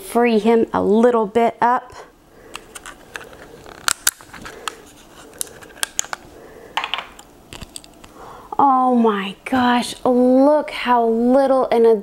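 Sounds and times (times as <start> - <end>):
packaging scratching and rustling: 2.6 - 6.4.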